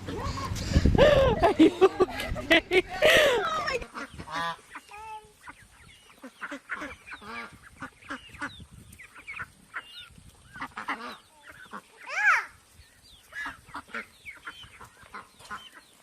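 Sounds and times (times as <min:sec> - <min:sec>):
flock of fowl calling: 0:03.0 - 0:12.6, 0:13.2 - 0:16.0.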